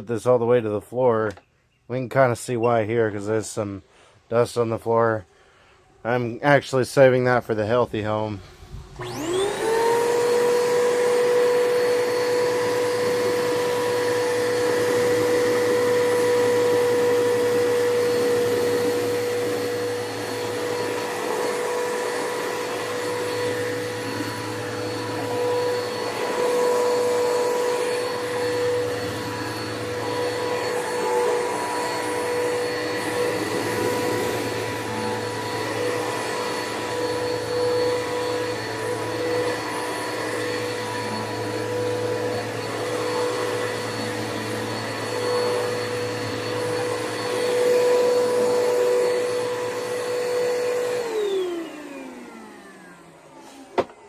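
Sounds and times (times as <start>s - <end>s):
vacuum cleaner running: 7.6s - 54.0s.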